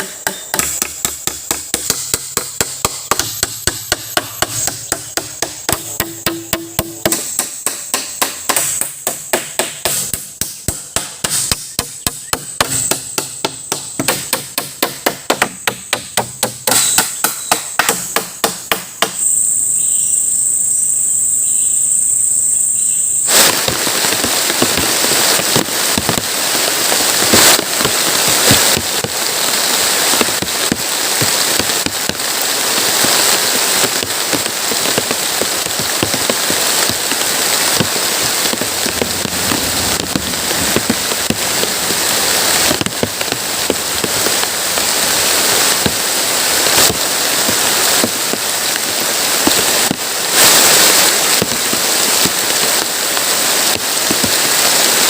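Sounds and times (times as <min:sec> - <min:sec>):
hammering on wood: 0:00.0 - 0:19.2
heavy rain hissing: 0:00.0 - 0:55.0
high-pitched insect drone: 0:16.7 - 0:23.3.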